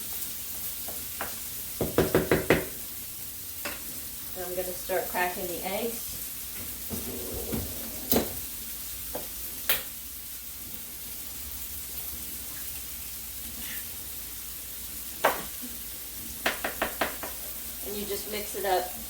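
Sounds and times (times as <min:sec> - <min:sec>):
vegetables sizzling in oil: 0:00.0 - 0:07.0, 0:08.4 - 0:19.0
eggs cracked against pan: 0:16.4 - 0:17.5.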